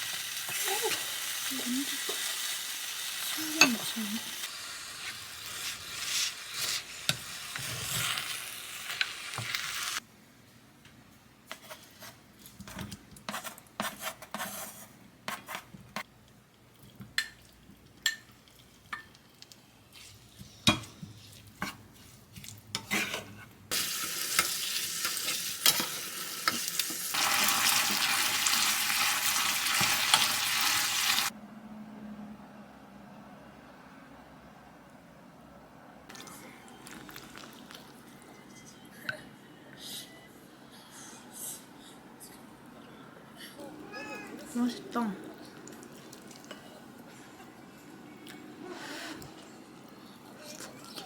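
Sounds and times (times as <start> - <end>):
food sizzling in a pan: 0.0 - 10.0, 23.7 - 31.3.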